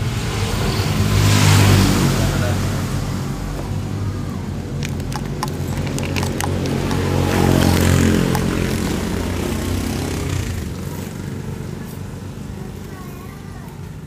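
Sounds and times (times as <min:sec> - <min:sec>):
sharp clicks of parts handled: 0:04.7 - 0:09.1.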